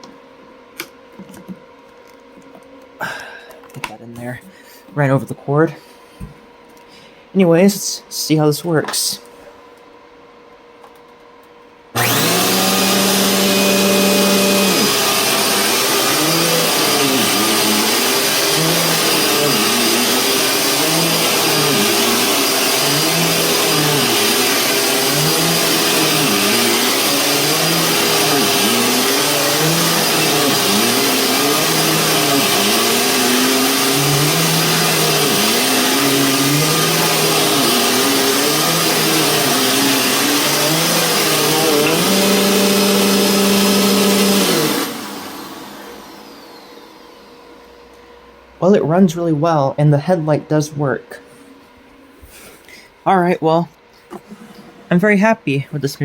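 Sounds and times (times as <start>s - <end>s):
upright vacuum cleaner running: 12.0s - 49.4s.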